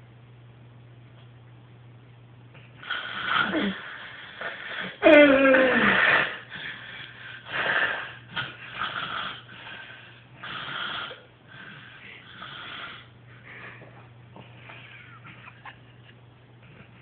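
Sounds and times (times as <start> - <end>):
woman snoring: 2.8 - 6.8.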